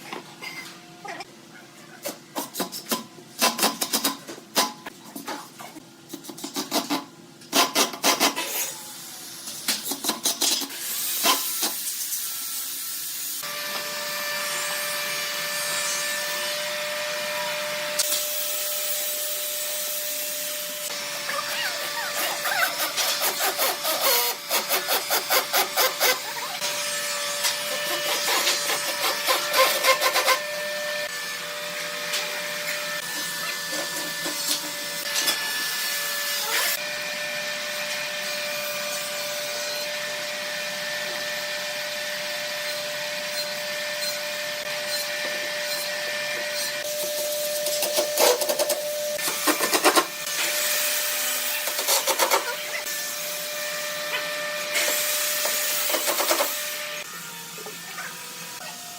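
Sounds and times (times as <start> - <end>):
small power tool whining: 13.4 - 58.9.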